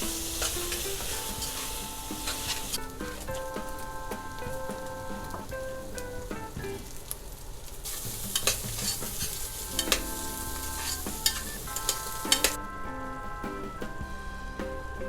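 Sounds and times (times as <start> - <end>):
food sizzling in a hot pan: 0.0 - 3.8, 5.3 - 12.6
background music: 0.0 - 7.1, 8.1 - 15.0.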